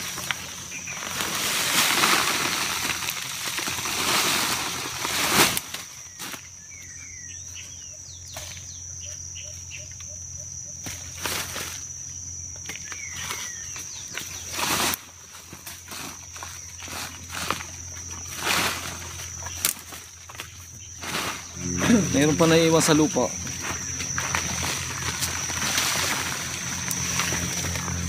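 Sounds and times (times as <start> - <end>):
birds chirping: 0.0 - 1.4, 5.9 - 11.2, 11.9 - 14.6, 16.3 - 28.0
loud rustling and scraping: 0.0 - 6.5, 13.1 - 28.0
steady high-pitched whine: 0.0 - 28.0.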